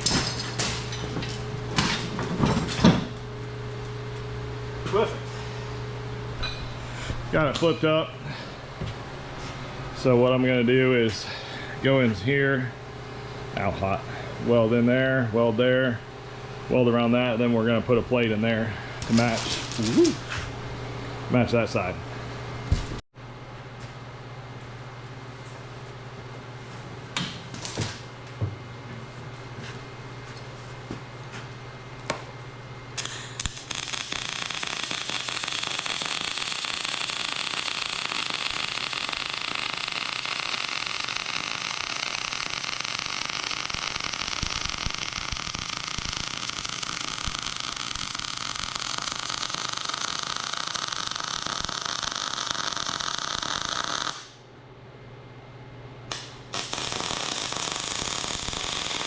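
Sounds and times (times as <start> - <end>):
low welder hum: 0.0 - 59.0
arc welding crackling sizzle: 33.0 - 54.4, 56.1 - 59.0.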